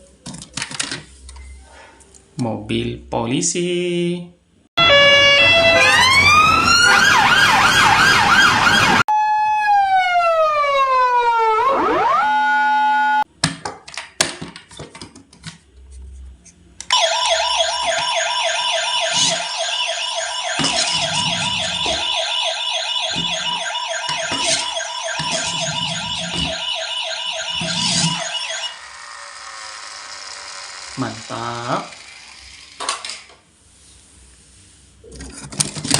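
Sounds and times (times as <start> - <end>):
police siren fast yelp: 4.8 - 13.3, 16.9 - 28.9
police siren wail: 4.8 - 13.3, 16.9 - 29.0.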